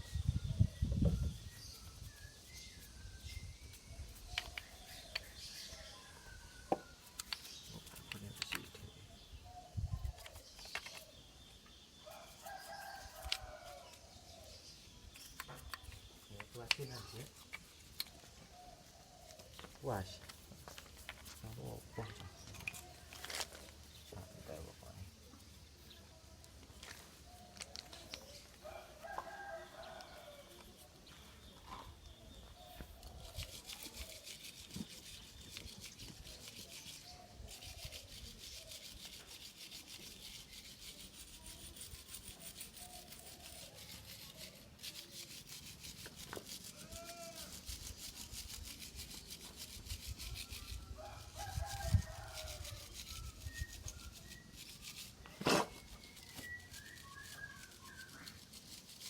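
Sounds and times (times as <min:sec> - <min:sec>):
stiff brush scrubbing metal parts: 0:06.9 - 0:08.9, 0:15.1 - 0:18.6, 0:19.2 - 0:25.6, 0:32.6 - 0:59.0.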